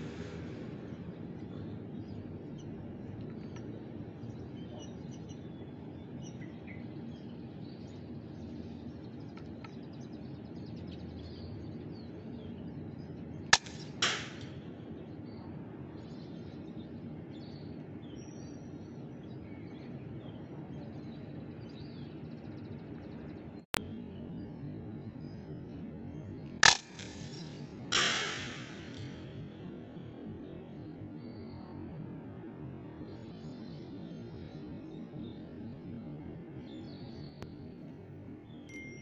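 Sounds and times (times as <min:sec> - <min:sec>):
birds chirping: 0:00.0 - 0:37.8
outdoor background noise: 0:00.0 - 0:39.0
loud snap: 0:13.5 - 0:14.6, 0:26.6 - 0:29.3
sharp crack: 0:13.5 - 0:14.6, 0:26.6 - 0:29.4.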